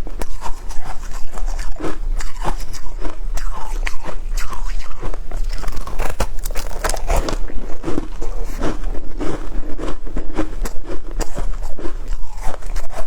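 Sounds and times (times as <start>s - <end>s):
shaved ice crunching: 5.4s - 8.8s.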